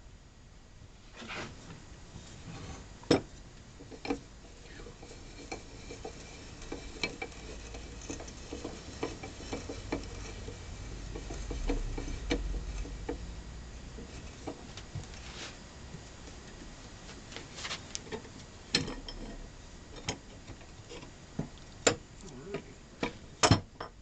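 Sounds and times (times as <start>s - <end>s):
metal vise clicks and clanks: 3.1s - 13.3s, 18.0s - 19.4s
low rumble: 10.0s - 15.2s.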